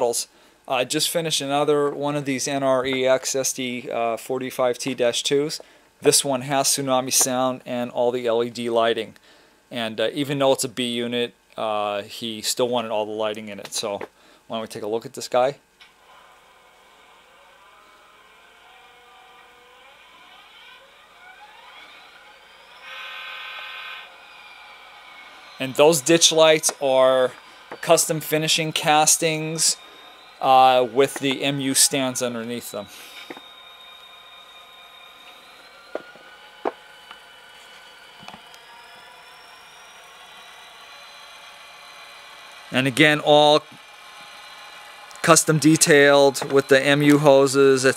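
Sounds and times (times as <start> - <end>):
faint diesel locomotive idle: 15.9 - 47.9.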